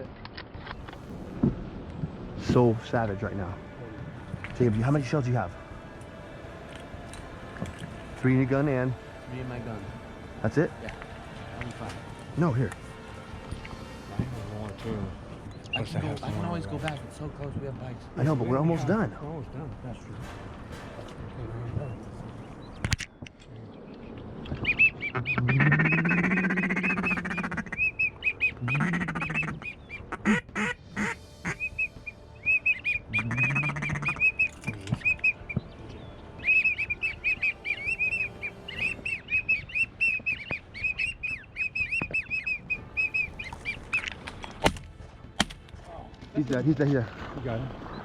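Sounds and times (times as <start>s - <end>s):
high peeping whistles: 24.5s - 30.1s, 31.0s - 44.1s
duck quacking: 24.8s - 31.9s, 32.5s - 35.4s.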